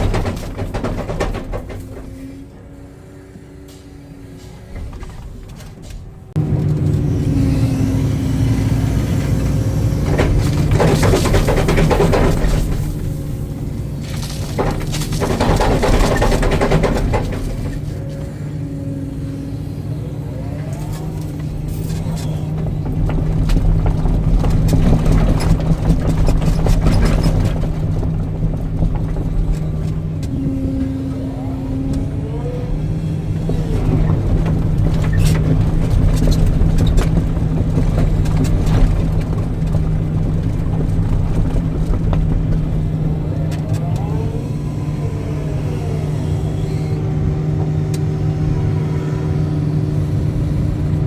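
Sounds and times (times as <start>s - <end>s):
excavator diesel engine running: 0.0s - 51.0s.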